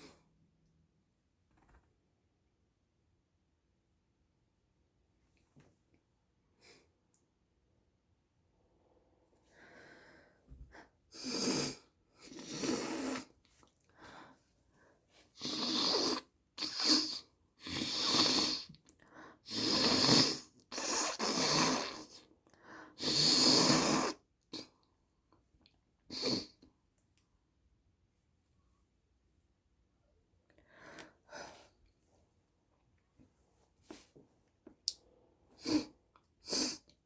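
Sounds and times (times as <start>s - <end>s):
person blowing nose: 11.2s - 13.3s, 15.4s - 18.7s, 19.4s - 22.2s, 23.0s - 24.7s, 26.1s - 26.6s, 35.6s - 36.9s.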